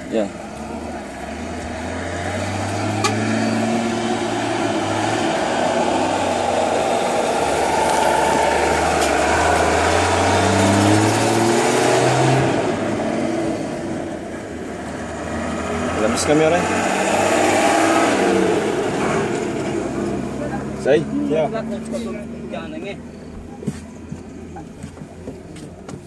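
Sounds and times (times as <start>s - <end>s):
vehicle engine pulling under load: 0.0s - 26.0s
loud rushing noise: 2.8s - 13.2s.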